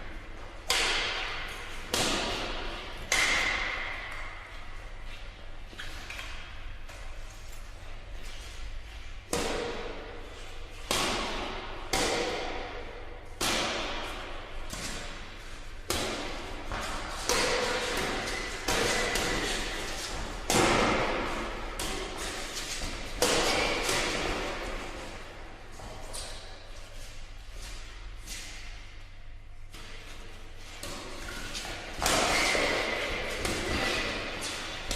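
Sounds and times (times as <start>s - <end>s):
racket hitting shuttlecock: 0.6s - 4.6s, 9.3s - 26.6s, 30.6s - 34.9s.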